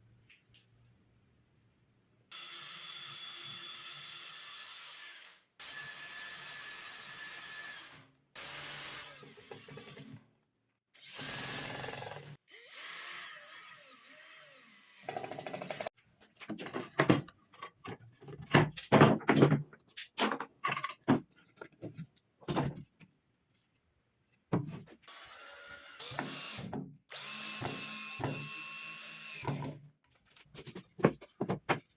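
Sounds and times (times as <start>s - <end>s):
power tool cutting wood: 11.0s - 15.9s, 25.1s - 29.7s.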